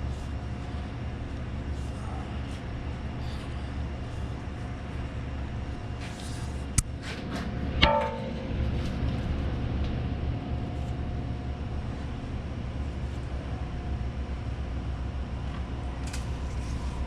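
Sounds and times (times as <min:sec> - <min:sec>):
shop machinery hum: 0:00.0 - 0:17.0
sharp metallic clank: 0:07.8 - 0:08.6.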